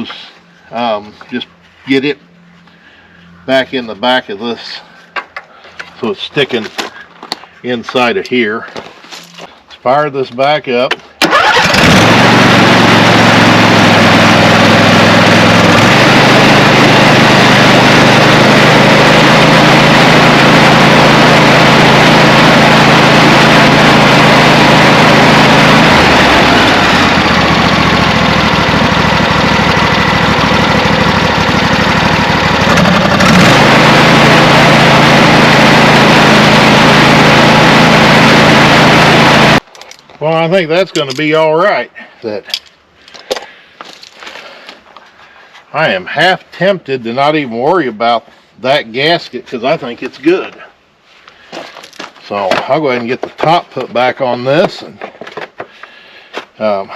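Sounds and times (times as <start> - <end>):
lawn tractor engine running: 11.2 - 39.6.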